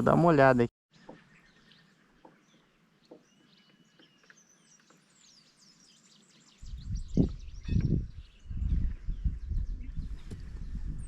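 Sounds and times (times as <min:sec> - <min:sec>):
bird whistling and chirping: 0:06.4 - 0:10.4.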